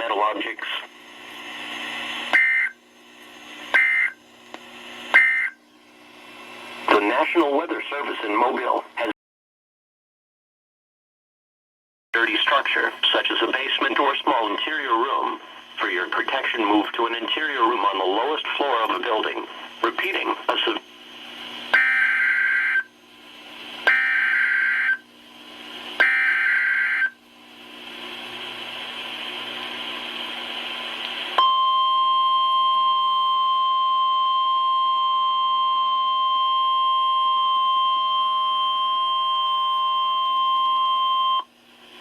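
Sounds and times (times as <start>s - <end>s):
radio hiss: 0.0s - 2.7s, 3.3s - 5.5s, 6.2s - 9.1s, 12.2s - 21.7s
data tone bursts: 2.3s - 2.8s, 3.7s - 4.2s, 5.1s - 5.6s
steady warning alarm tone: 2.3s - 2.8s, 3.7s - 4.2s, 5.1s - 5.6s, 21.7s - 22.9s, 23.8s - 25.1s, 26.0s - 27.2s, 31.4s - 41.5s.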